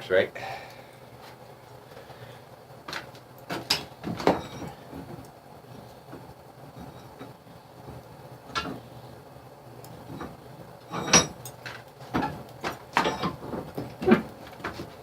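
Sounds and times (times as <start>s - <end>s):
metal tools clanking: 3.6s - 4.8s, 10.1s - 12.4s, 13.0s - 14.8s.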